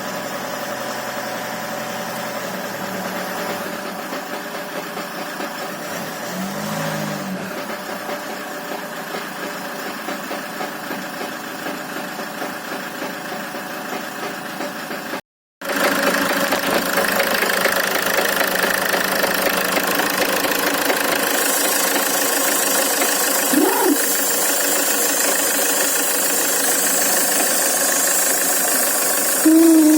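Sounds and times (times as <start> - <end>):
diesel engine knocking: 0.2 - 5.8, 7.5 - 23.5.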